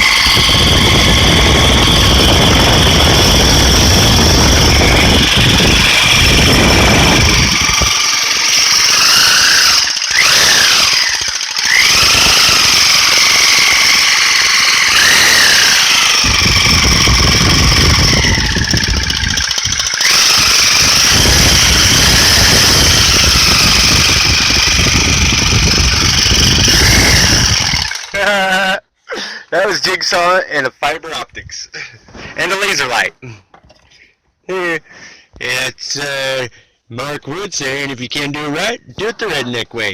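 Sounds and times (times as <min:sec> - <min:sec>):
electric jigsaw squealing: 0:00.0 - 0:28.4.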